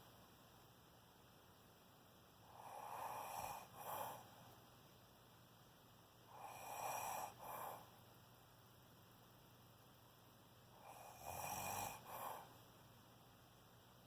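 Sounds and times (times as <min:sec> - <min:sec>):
person snoring: 0:06.4 - 0:07.8, 0:10.8 - 0:12.5.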